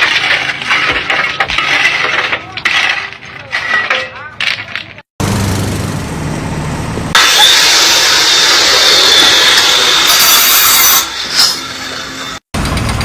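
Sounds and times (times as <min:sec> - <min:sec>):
harsh machine noise with whine: 0:05.2 - 0:13.0.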